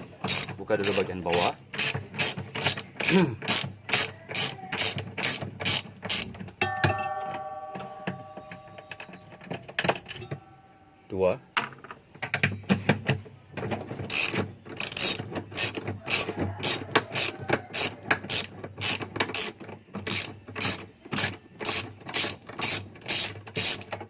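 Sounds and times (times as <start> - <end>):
ratchet wrench clicking: 0.3 - 6.3, 14.1 - 23.9.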